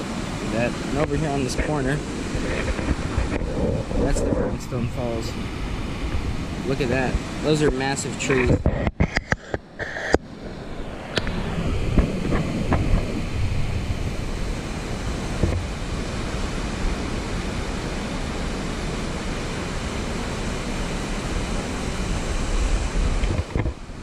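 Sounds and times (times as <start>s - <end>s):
waterfall rushing: 0.0s - 8.4s, 10.3s - 24.0s.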